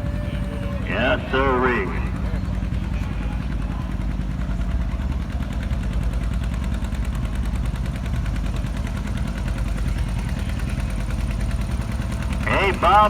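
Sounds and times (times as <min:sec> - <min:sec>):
tractor engine running under load: 0:00.0 - 0:13.0.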